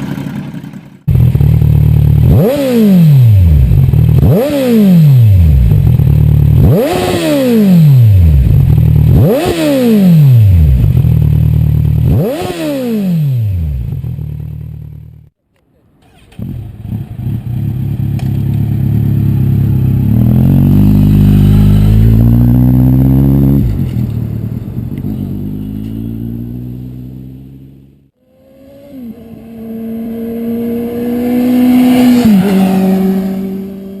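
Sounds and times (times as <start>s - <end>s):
motorcycle engine revving: 0.0s - 15.3s, 16.1s - 34.0s
motorcycle passing by: 16.4s - 34.0s.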